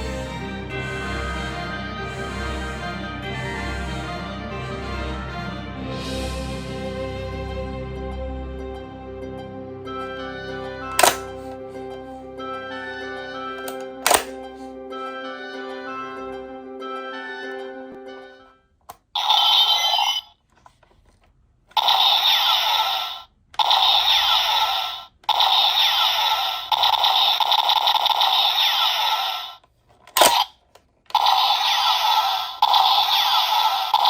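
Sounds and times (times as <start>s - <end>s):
toy electronic sound effects: 10.8s - 11.5s, 12.8s - 14.4s, 18.3s - 20.4s, 21.7s - 34.0s
sharp click: 11.0s - 11.3s, 13.6s - 14.4s.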